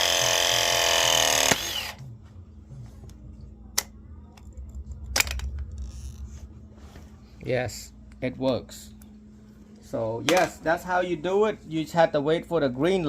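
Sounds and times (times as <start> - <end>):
pressing tool motor whining: 0.0 - 2.0.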